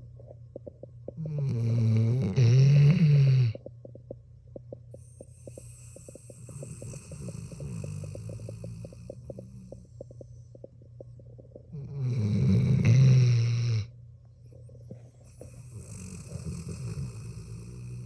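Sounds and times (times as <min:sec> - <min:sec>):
dog snoring loudly: 0:01.2 - 0:03.6, 0:05.3 - 0:10.0, 0:11.7 - 0:13.9, 0:15.3 - 0:18.0.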